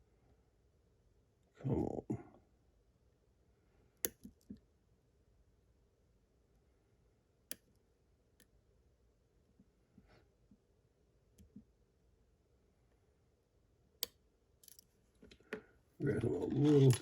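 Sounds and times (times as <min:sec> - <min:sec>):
lock pick clicks and taps: 0:04.0 - 0:04.6.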